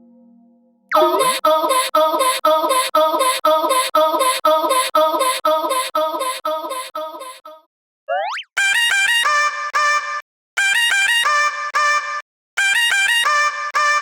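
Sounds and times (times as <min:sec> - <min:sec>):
cartoon railroad crossing signal: 0:00.9 - 0:07.5.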